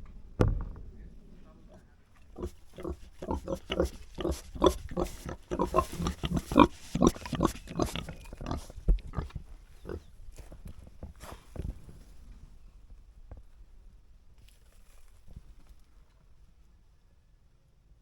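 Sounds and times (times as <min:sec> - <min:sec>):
pigs grunting: 0:01.5 - 0:11.6.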